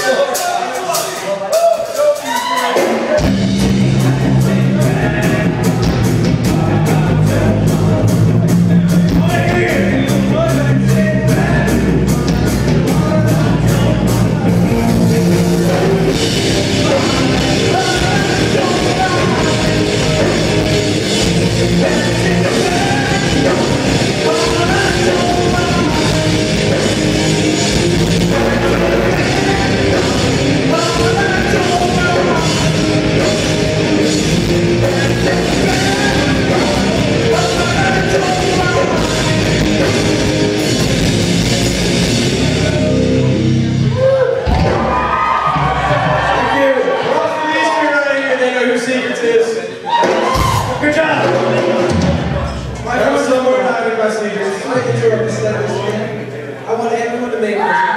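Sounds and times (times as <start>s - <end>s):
person singing: 0.0s - 40.6s
heavy rock band: 0.0s - 47.2s, 49.8s - 53.6s.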